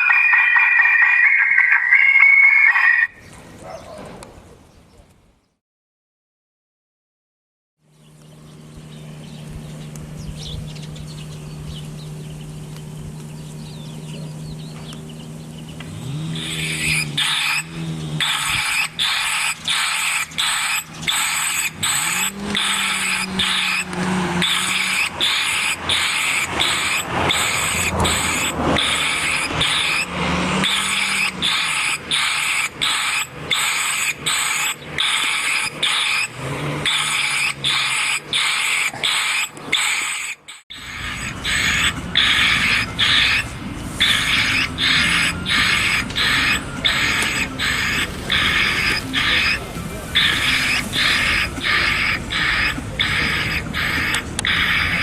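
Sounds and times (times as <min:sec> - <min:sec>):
bird distress call on loudspeaker: 0:00.0 - 0:03.2, 0:16.3 - 0:30.0, 0:37.7 - 0:55.0
low engine hum: 0:07.8 - 0:55.0.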